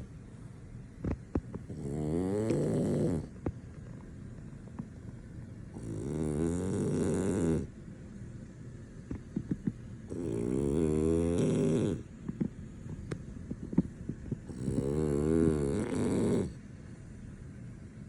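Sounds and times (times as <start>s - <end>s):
dog snoring: 1.0s - 4.0s, 5.7s - 7.8s, 9.2s - 12.9s, 13.5s - 16.6s
small clicks and snuffles: 1.0s - 7.7s, 9.0s - 16.6s.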